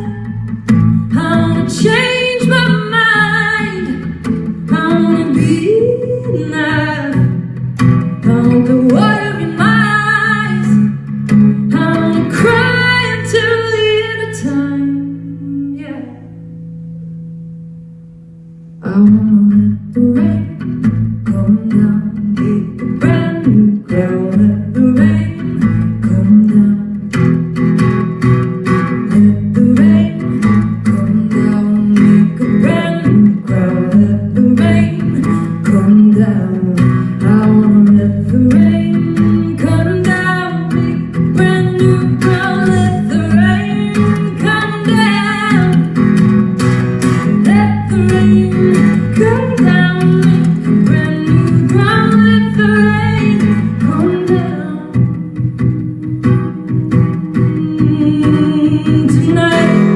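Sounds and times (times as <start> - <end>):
woman singing: 0.0 - 16.5, 18.8 - 27.9, 28.6 - 59.9
acoustic guitar strumming: 0.0 - 59.9.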